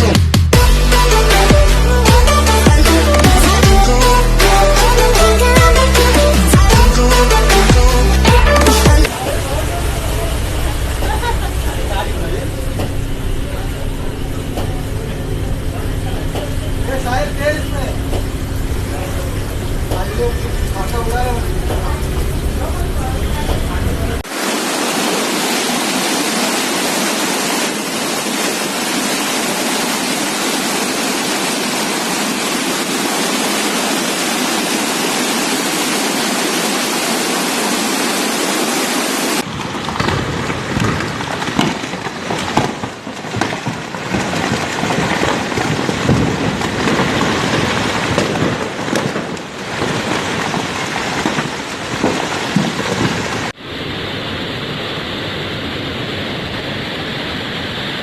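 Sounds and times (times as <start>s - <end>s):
rushing water: 17.0s - 58.0s.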